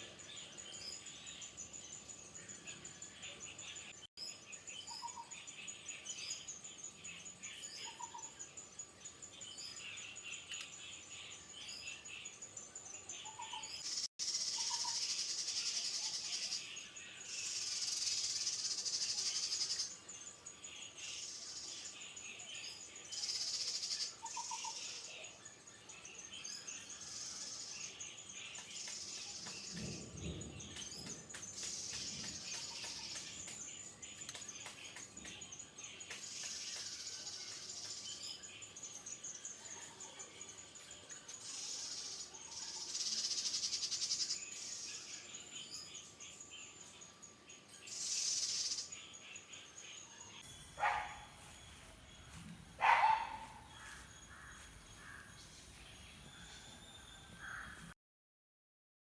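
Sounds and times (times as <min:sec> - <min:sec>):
birds chirping: 0:00.0 - 0:58.0
falling bird calls: 0:50.6 - 0:58.0.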